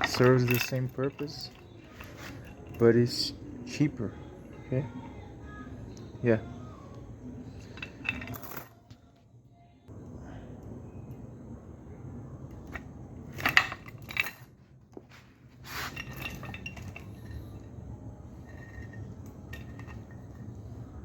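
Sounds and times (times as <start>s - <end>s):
metal chain clinking on plates: 0.0s - 5.0s, 7.5s - 8.9s, 12.6s - 14.6s, 15.7s - 20.8s.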